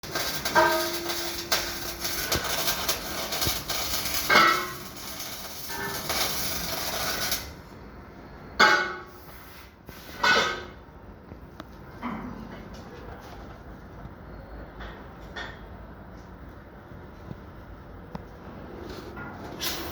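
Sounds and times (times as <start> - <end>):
welding arc crackling: 0.0 - 7.6.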